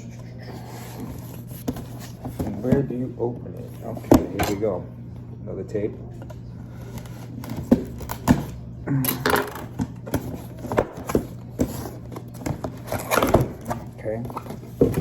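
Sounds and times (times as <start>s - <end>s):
cardboard rustling: 0.6s - 4.4s, 10.0s - 15.0s.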